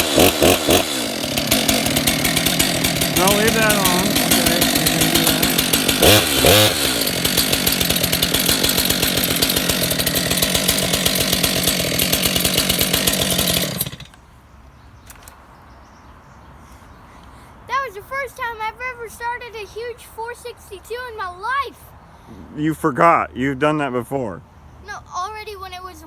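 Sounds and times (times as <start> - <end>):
chainsaw running and revving: 0.0 - 14.2.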